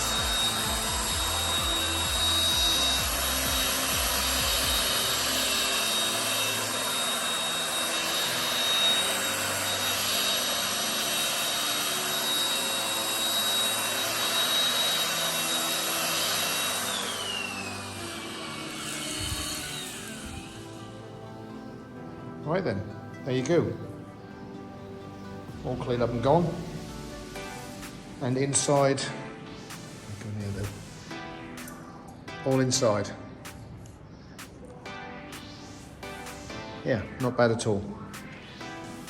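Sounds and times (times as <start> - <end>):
vacuum sucking up dirt: 0.0 - 20.9
stick vacuum motor whine: 0.0 - 22.6.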